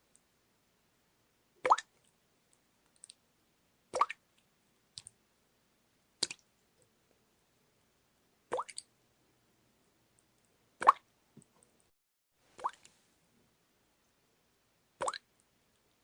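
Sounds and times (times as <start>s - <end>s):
faint small drips: 1.6s - 3.2s, 12.6s - 13.0s
water drops plopping: 15.0s - 15.2s.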